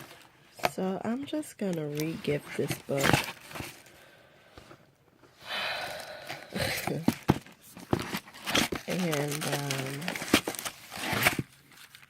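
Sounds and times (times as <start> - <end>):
rustling: 1.8 - 4.8, 5.8 - 12.0
items knocking and clicking: 6.6 - 11.5.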